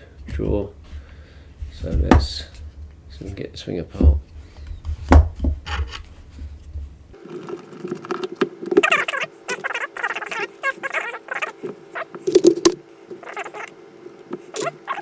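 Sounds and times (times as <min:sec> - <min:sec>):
plastic parts scratching and squeaking: 0:00.0 - 0:15.0
sharp knocks and taps: 0:00.2 - 0:07.0.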